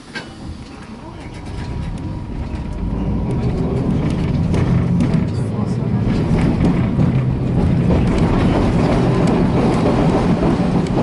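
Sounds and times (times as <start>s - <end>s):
tram rumbling on rails: 0.0s - 11.0s.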